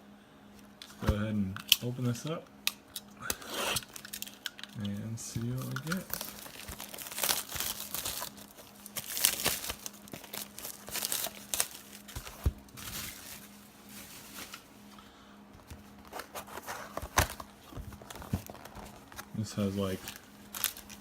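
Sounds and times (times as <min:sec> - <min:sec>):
plastic wrapping crinkling and tearing: 0:03.8 - 0:14.8, 0:16.0 - 0:21.0.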